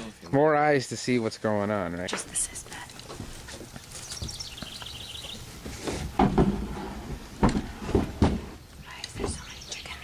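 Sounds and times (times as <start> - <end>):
high chirps stepping down: 3.8 - 5.6
sharp knocks and clunks: 5.6 - 9.5.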